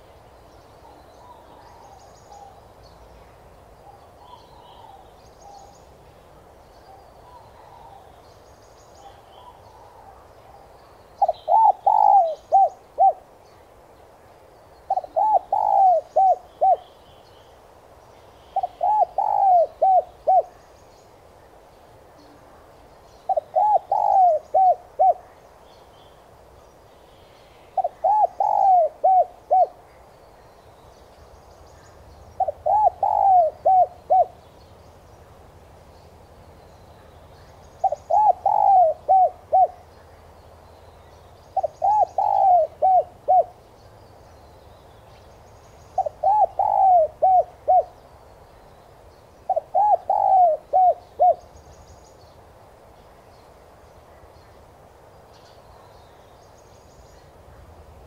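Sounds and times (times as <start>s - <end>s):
dove cooing: 11.2s - 13.3s, 14.9s - 16.9s, 18.6s - 20.6s, 23.3s - 25.4s, 27.8s - 29.9s, 32.4s - 34.4s, 37.8s - 39.9s, 41.6s - 43.6s, 46.0s - 48.0s, 49.5s - 51.5s.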